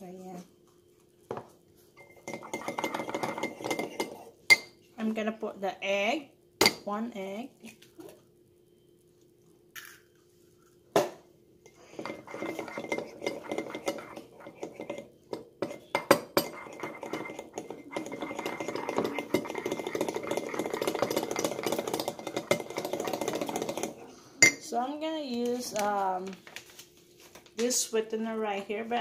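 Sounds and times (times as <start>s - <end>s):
utensil clinking in a mug: 2.0s - 4.8s, 11.7s - 24.7s.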